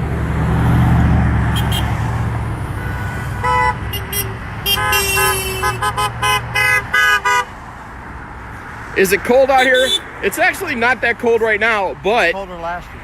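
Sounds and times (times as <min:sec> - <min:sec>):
vehicle passing: 0:00.0 - 0:13.0
car horns honking: 0:01.5 - 0:07.6, 0:09.5 - 0:10.2.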